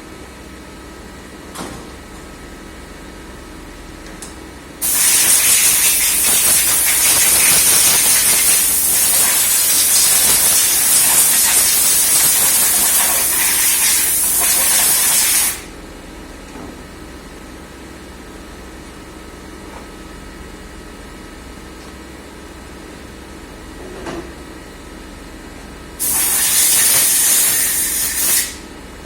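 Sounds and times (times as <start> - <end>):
pressurised jet hissing: 4.8 - 15.7, 26.0 - 28.6.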